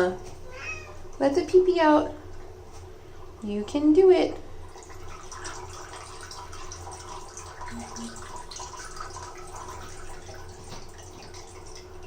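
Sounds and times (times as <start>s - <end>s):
urine trickling into water: 4.5s - 12.0s.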